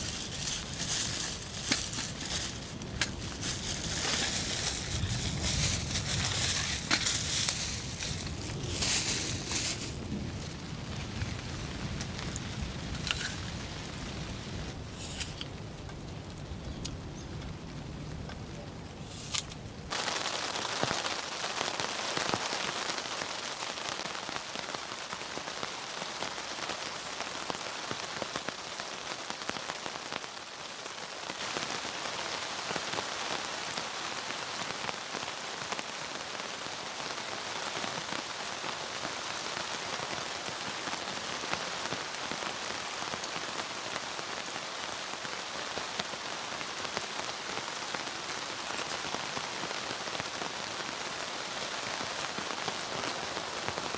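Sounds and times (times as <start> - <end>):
rain falling: 0.0 - 53.9.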